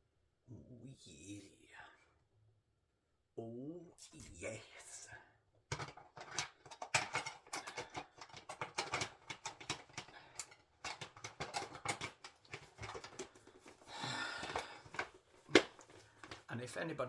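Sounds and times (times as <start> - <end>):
plastic cassette clicks and taps: 5.8 - 16.5.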